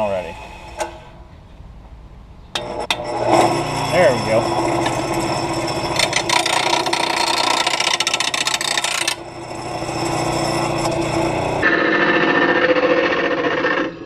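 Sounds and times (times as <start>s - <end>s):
grinding wheel scraping blade: 0.0s - 1.2s, 2.6s - 14.0s
sharpener motor humming: 2.6s - 11.8s.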